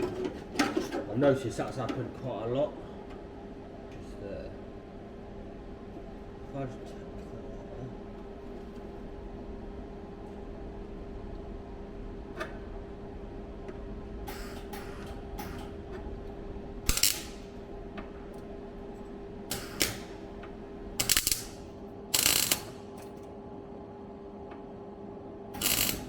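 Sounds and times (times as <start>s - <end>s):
steady hum: 0.0s - 26.0s
tack welding bursts: 16.9s - 17.5s, 19.5s - 20.3s, 21.0s - 22.9s, 25.6s - 26.0s.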